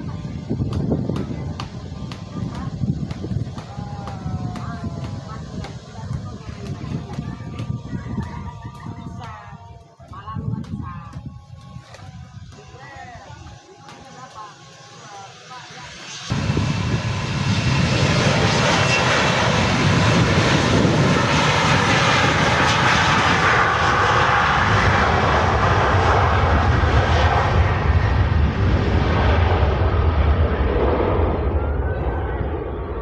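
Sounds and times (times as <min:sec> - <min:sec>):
jet engine roar: 0:00.0 - 0:33.0.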